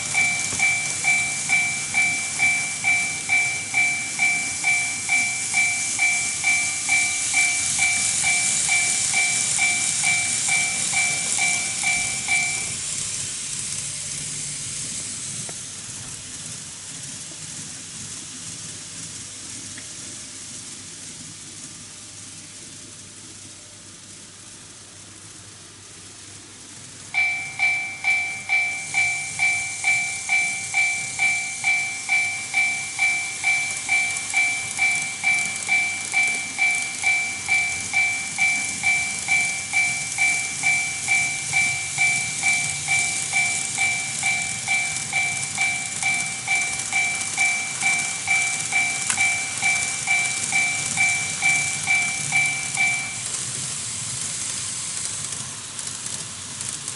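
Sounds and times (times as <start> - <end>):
electronic two-tone crossing bell: 0.0 - 13.0, 27.1 - 53.4
model trains running on track: 0.0 - 56.9.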